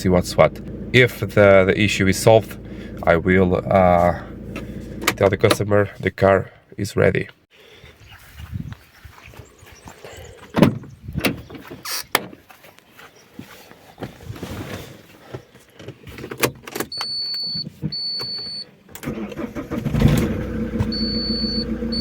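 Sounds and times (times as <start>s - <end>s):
diesel engine idling: 0.0s - 5.2s, 19.0s - 22.0s
starter motor cranking: 19.0s - 22.0s.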